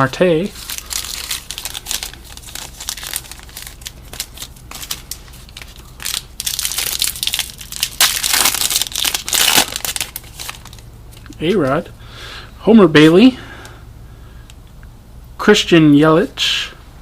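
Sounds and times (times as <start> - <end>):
plastic wrapper crinkling: 0.0 - 11.8.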